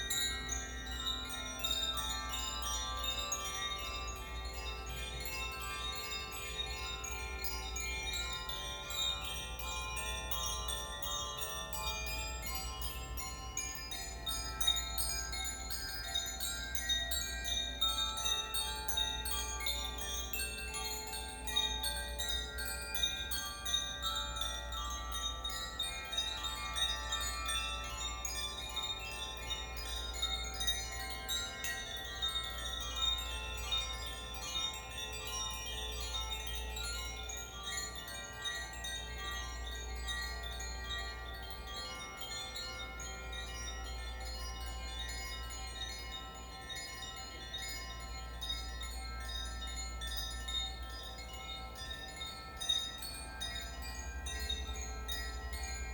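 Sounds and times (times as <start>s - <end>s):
metal chimes ringing: 0.0s - 55.9s.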